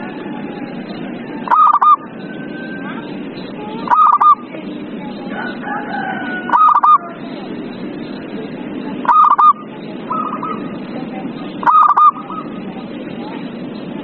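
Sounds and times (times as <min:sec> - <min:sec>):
low background noise: 0:00.0 - 0:14.0
dove cooing: 0:01.4 - 0:03.0, 0:03.8 - 0:04.4, 0:05.4 - 0:07.3, 0:09.0 - 0:10.9, 0:11.5 - 0:12.7.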